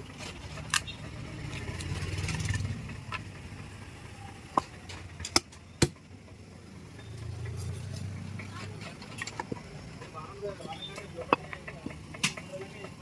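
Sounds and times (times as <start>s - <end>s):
low engine-like rumble: 0.0s - 13.0s.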